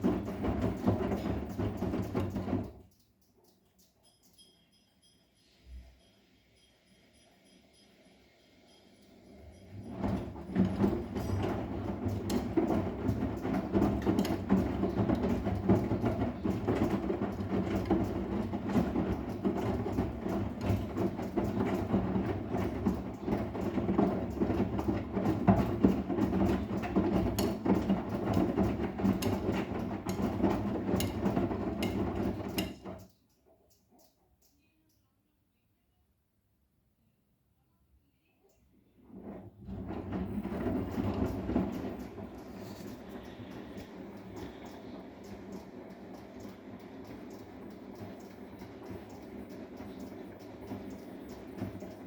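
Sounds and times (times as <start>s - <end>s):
washing machine drum churning: 0.0s - 2.9s, 8.6s - 33.1s, 39.0s - 52.0s
load tumbling clicks and knocks: 0.0s - 3.0s, 9.8s - 33.2s, 39.2s - 52.0s.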